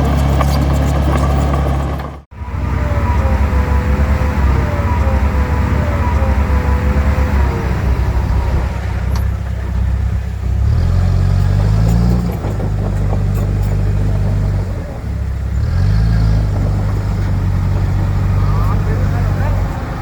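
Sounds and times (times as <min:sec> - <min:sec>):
diesel engine revving under load: 0:00.0 - 0:20.0.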